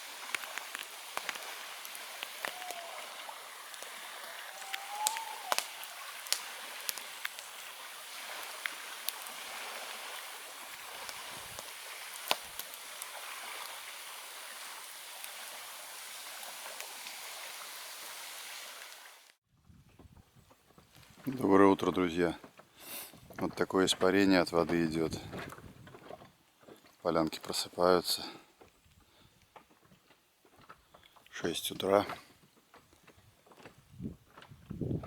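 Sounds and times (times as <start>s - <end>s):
campfire crackling and popping: 0.0s - 19.3s
faint whistles: 4.3s - 6.0s.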